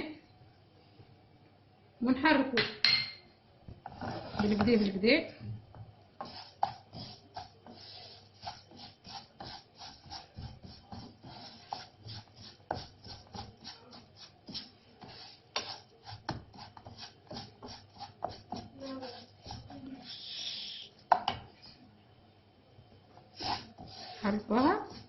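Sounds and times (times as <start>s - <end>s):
spoon scraping a pan: 6.2s - 20.2s, 23.3s - 25.0s.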